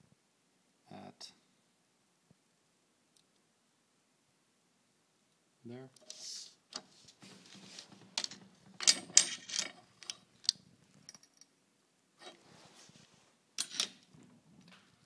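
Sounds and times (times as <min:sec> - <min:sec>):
rustling: 0:06.0 - 0:11.1, 0:12.2 - 0:13.4
small metal parts clicking and rattling: 0:08.2 - 0:11.5, 0:13.6 - 0:14.1.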